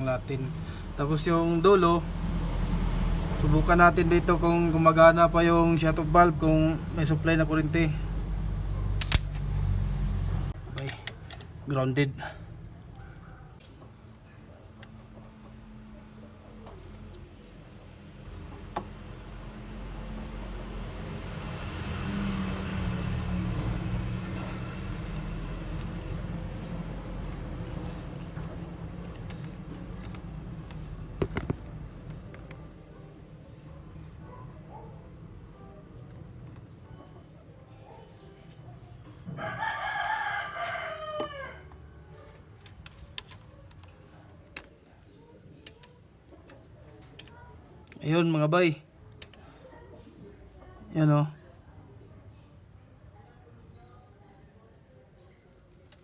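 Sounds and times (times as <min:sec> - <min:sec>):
vehicle engine humming: 0:02.0 - 0:37.2
sharp click: 0:09.0 - 0:09.4
rooster crowing: 0:39.3 - 0:42.0.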